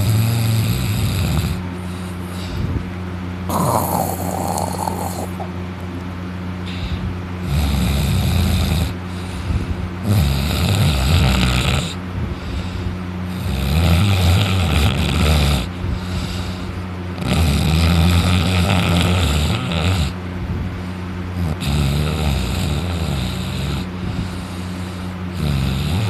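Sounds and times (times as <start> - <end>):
man snoring loudly: 0.0 - 2.6, 3.5 - 5.5, 6.7 - 9.3, 10.0 - 12.0, 13.3 - 16.6, 17.2 - 20.2, 21.4 - 26.0.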